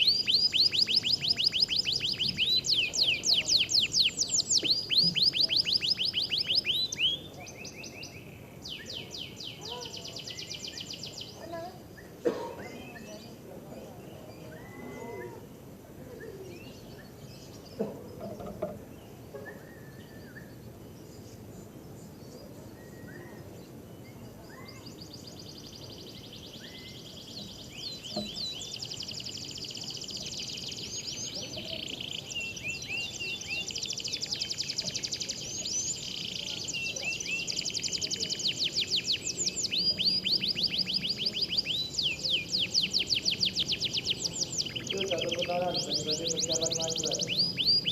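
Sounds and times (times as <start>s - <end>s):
canary trilling song: 0.0s - 13.4s, 24.3s - 47.9s
canaries chirping: 0.0s - 47.9s
low background murmur: 0.0s - 47.9s.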